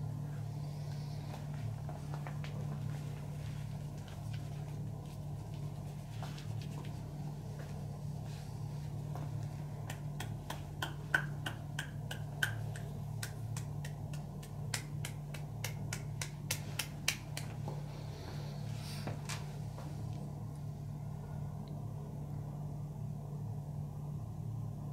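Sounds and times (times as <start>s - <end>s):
steady low hum: 0.0s - 24.9s
sharp hand snaps: 9.8s - 17.6s.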